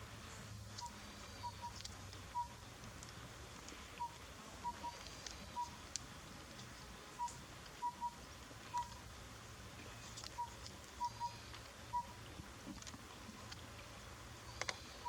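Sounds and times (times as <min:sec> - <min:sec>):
owlet whistled hoots: 0:07.2 - 0:08.9, 0:10.4 - 0:12.2.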